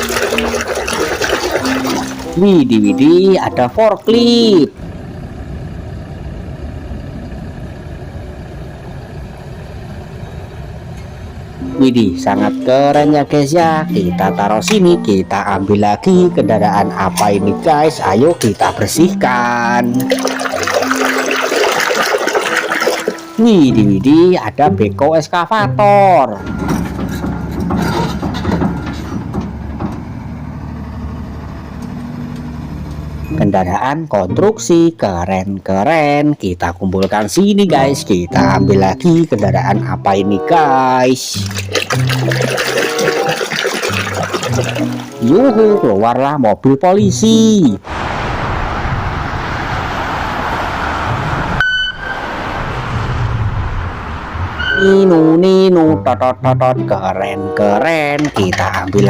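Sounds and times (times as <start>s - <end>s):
excavator engine running: 0.0s - 24.9s, 25.6s - 33.6s, 37.0s - 45.8s
engine idling: 3.6s - 15.3s, 26.4s - 33.3s.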